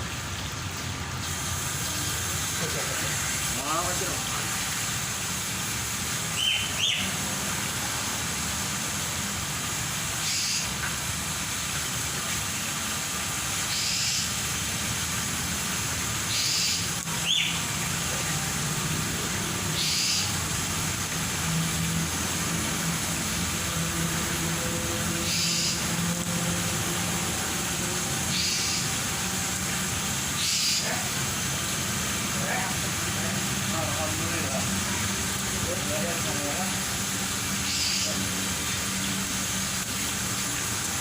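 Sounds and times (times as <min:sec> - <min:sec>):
soft hissing bursts: 0:01.1 - 0:41.0
bird gliding calls: 0:19.8 - 0:20.3, 0:28.3 - 0:28.8.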